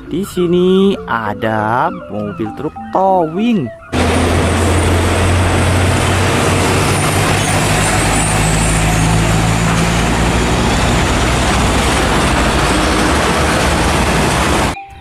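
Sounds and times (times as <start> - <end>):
heavy truck engine running: 3.9 - 14.8.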